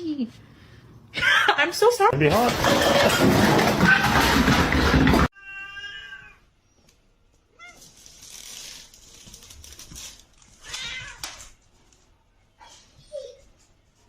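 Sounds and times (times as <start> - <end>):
cat meowing: 5.4 - 6.4, 10.6 - 11.4.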